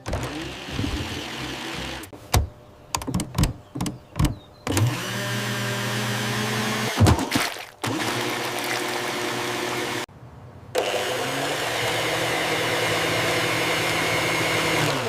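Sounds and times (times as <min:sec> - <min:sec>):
blender motor humming: 0:00.0 - 0:02.1, 0:04.7 - 0:07.0, 0:07.8 - 0:10.0, 0:10.8 - 0:15.0.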